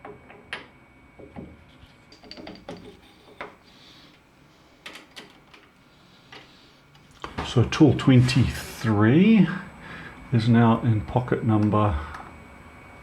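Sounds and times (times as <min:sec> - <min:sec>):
metal tool holders clicking: 0:02.2 - 0:04.2, 0:04.8 - 0:07.1.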